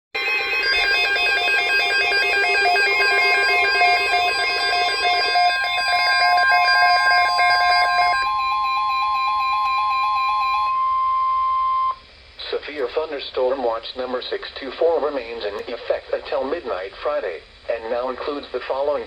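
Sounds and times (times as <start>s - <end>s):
alternating electronic beeping tones: 0.2s - 12.0s
steady high electronic tone: 0.2s - 12.0s.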